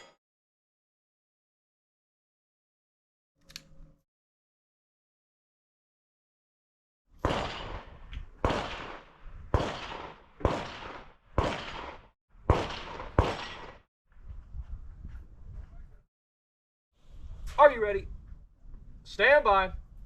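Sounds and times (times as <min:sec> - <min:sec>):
pistol shots: 0:07.2 - 0:13.8.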